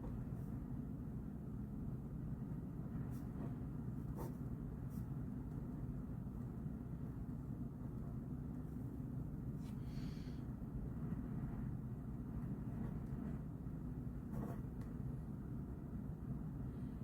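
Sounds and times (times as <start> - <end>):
low room hum: 0.0 - 17.0
pen writing on paper: 3.1 - 5.1, 14.3 - 14.8.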